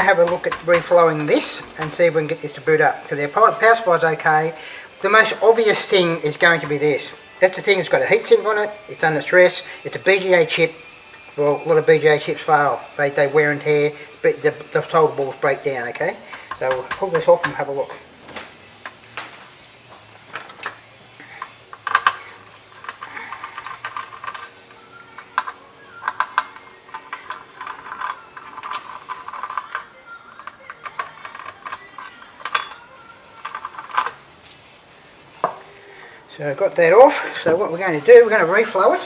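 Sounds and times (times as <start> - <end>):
tools clicking and scraping on metal: 0.0 - 35.9.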